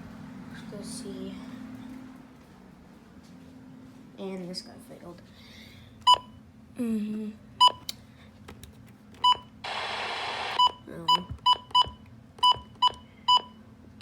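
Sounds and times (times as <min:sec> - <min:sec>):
radio static: 0:09.7 - 0:10.6.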